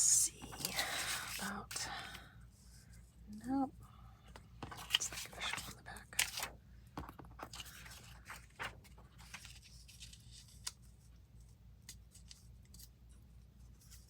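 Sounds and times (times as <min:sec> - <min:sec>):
paper rustling and clicks: 0:04.4 - 0:10.9, 0:11.8 - 0:12.9.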